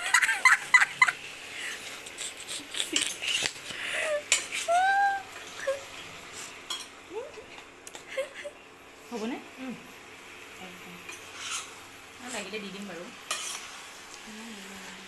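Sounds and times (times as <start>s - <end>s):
metal utensils clinking on pots: 4.3s - 4.7s, 6.7s - 7.0s, 13.3s - 13.7s.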